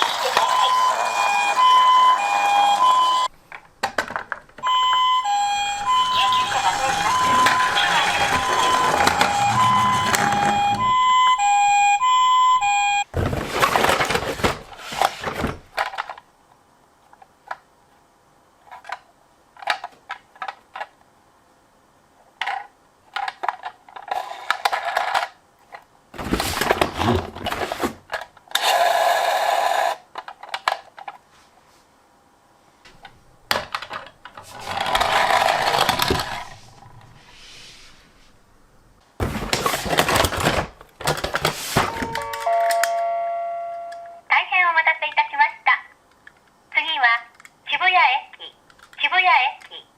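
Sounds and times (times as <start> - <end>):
two-tone ambulance siren: 0.0 - 3.3, 4.6 - 13.0, 41.8 - 44.3
toy cars clicking and rattling: 22.4 - 25.8, 33.5 - 36.5.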